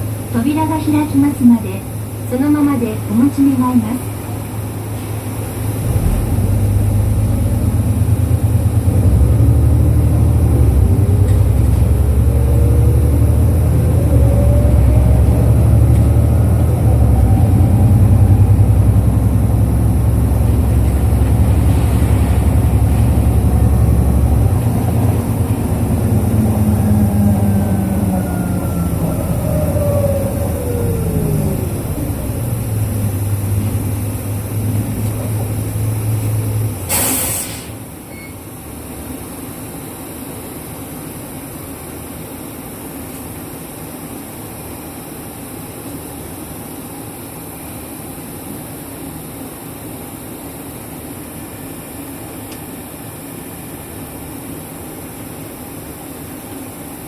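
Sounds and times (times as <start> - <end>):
drivetrain whine: 0.0 - 36.9
bus engine drone: 0.0 - 57.0.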